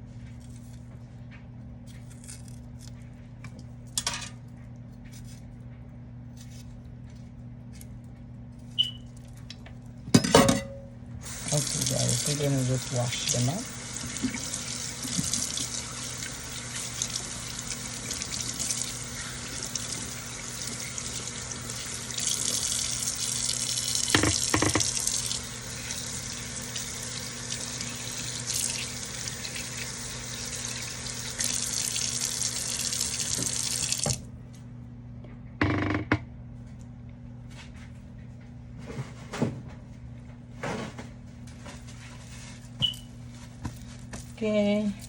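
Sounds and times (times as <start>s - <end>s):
tap running into sink: 24.0s - 25.4s, 33.0s - 34.2s.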